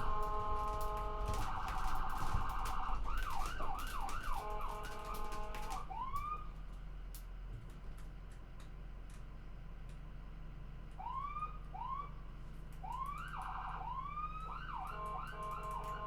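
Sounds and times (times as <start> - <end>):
ambulance siren: 0.0 - 6.6, 11.0 - 12.2, 12.8 - 16.0
low vehicle rumble: 0.0 - 16.0.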